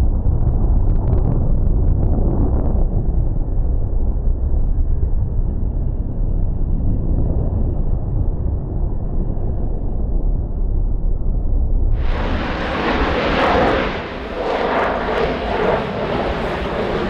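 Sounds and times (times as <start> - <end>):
aircraft engines rumbling: 12.0 - 17.0.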